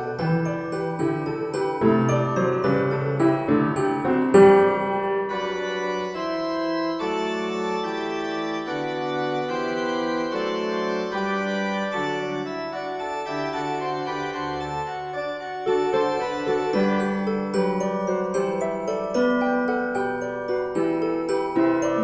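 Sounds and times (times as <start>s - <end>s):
organ-like keyboard chords: 5.3s - 17.2s.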